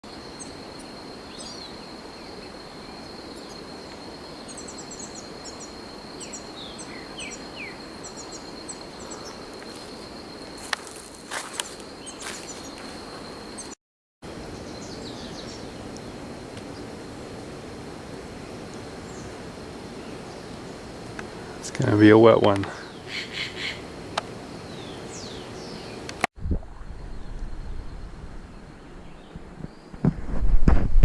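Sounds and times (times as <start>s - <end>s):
insect drone: 0.0s - 30.9s
constant hiss: 0.0s - 31.0s
birds chirping and whistling: 4.5s - 9.4s.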